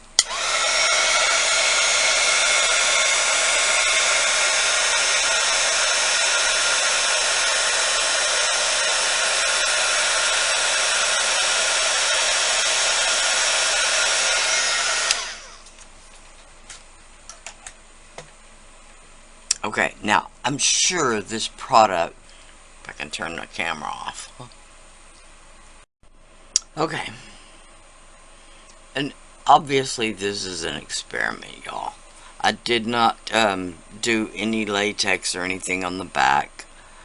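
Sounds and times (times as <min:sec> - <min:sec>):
hot-air blower with whining fan: 0:00.0 - 0:18.3.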